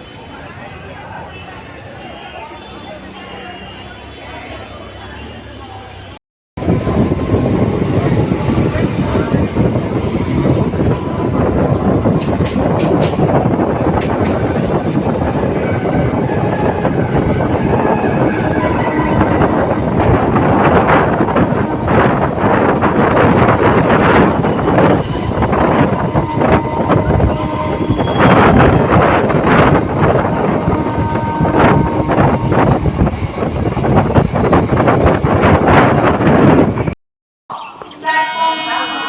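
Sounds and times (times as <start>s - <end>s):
train wheels rumbling on rails: 6.6s - 37.0s
high-pitched wheel squeals: 26.7s - 29.8s, 33.4s - 35.7s.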